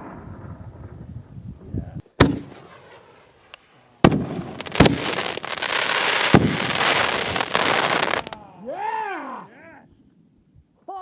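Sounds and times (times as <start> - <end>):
fireworks bursting: 0.0 - 8.6
fireworks crackling: 0.0 - 8.6.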